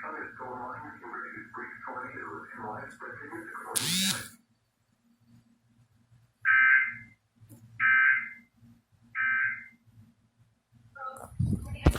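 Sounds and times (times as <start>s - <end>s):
buzzing data tone bursts: 3.8s - 4.3s.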